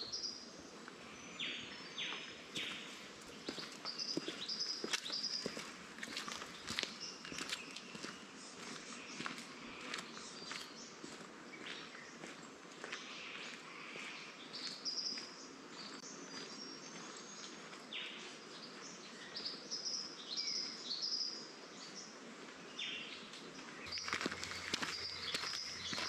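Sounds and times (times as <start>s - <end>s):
background hiss: 0.0s - 26.0s
birds chirping: 0.0s - 26.0s
footsteps: 2.5s - 14.7s, 23.8s - 26.0s.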